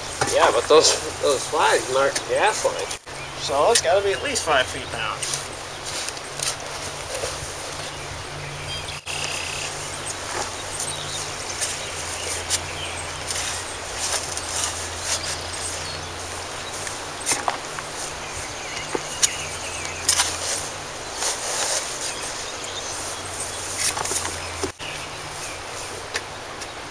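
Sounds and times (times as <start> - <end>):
birds chirping: 0.0 - 26.9
short scrapes and knocks: 16.8 - 17.9.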